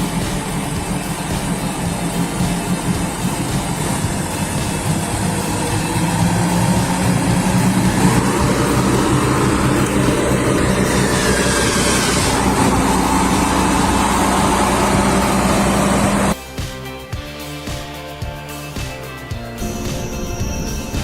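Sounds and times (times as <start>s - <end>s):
truck engine running: 0.0s - 16.4s.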